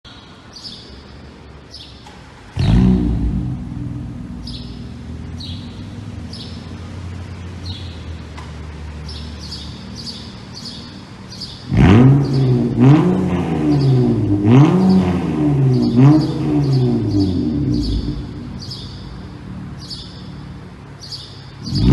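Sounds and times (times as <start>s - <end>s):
bird chirping: 0.1s - 2.3s, 4.4s - 13.0s, 15.6s - 21.9s
car exhaust revving: 2.4s - 21.9s.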